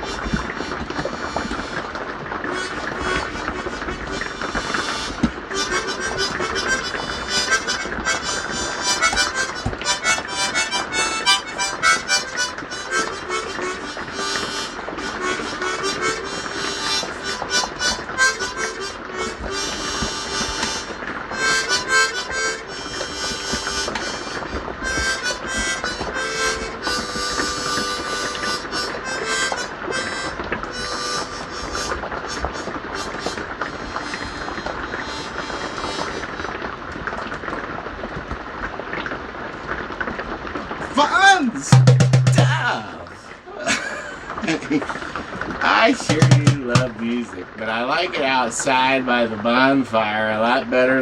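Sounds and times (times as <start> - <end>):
harmonica playing a tune: 0.0 - 36.6, 41.7 - 42.6, 45.7 - 46.9.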